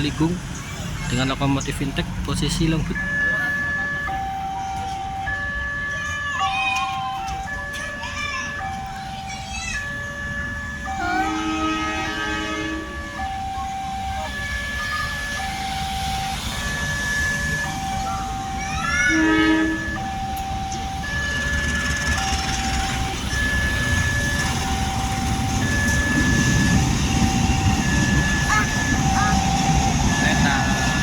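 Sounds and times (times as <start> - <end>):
railroad crossing siren: 0.0 - 31.0
train rumble: 0.0 - 31.0
train horn blowing: 11.0 - 13.1, 19.1 - 20.0.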